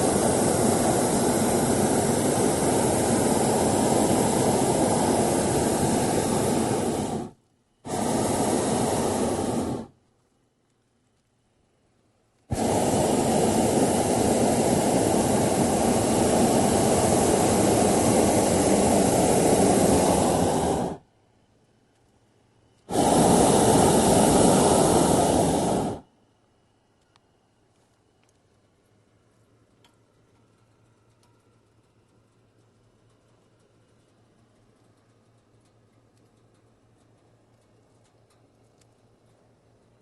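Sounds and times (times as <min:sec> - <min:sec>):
propane burner rushing: 0:00.0 - 0:10.0, 0:12.5 - 0:21.1, 0:22.9 - 0:26.1.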